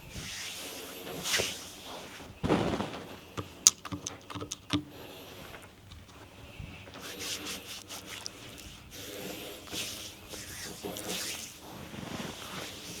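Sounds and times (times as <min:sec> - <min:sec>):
hands rubbing skin: 0:06.9 - 0:13.0.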